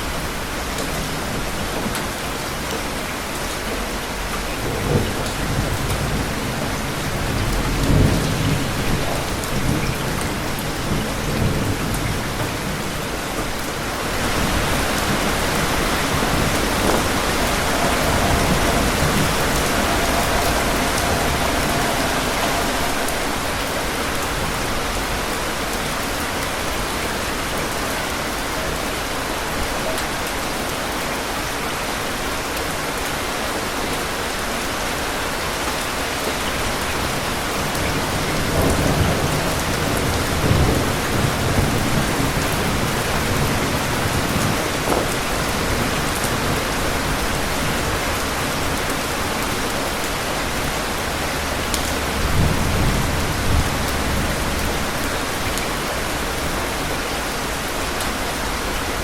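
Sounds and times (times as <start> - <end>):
heavy rain: 0.0 - 59.0
thunder rumbling low: 3.7 - 28.8, 36.6 - 57.0.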